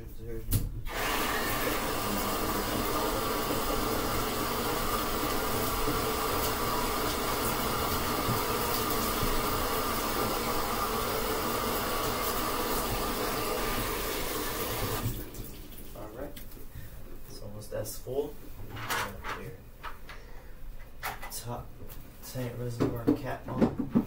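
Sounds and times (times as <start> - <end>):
water running from a tap: 0.9 - 16.1.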